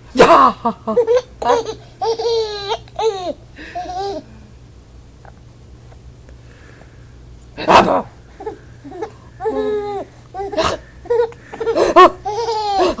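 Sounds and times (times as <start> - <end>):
baby laughing: 0.3 - 4.3, 8.4 - 13.0.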